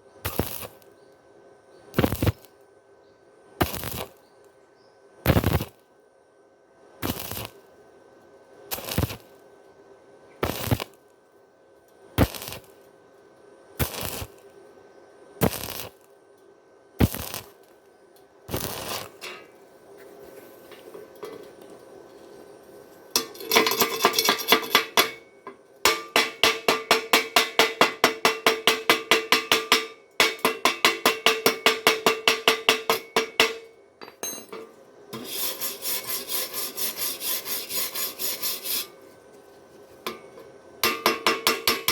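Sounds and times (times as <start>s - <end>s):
rapid scraping on metal: 23.2s - 25.2s, 35.1s - 39.2s
ringing metal strikes: 25.9s - 34.7s.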